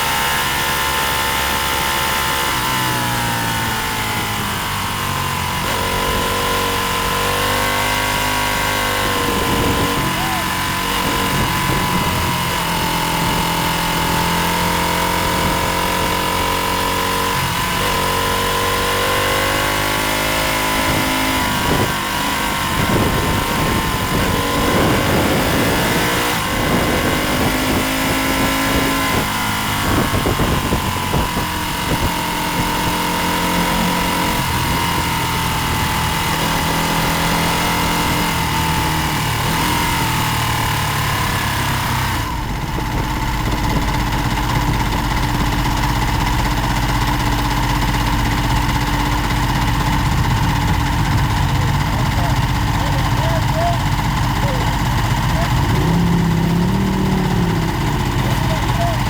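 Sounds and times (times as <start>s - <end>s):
motorcycle engine at speed: 0.0s - 59.0s
wind rush: 9.0s - 13.5s, 22.6s - 32.1s.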